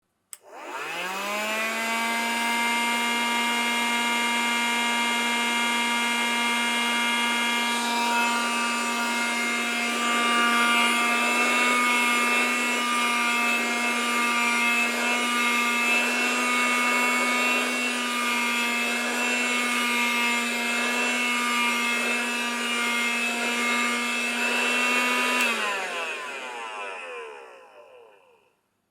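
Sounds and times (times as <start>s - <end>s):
vacuum cleaner motor whine: 0.4s - 28.4s.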